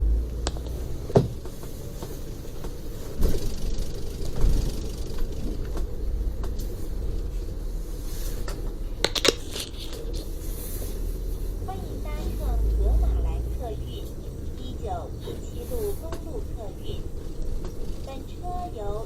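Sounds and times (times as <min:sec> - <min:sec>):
bus engine and road rumble: 0:00.0 - 0:19.0
knocks and rattles: 0:00.4 - 0:06.8.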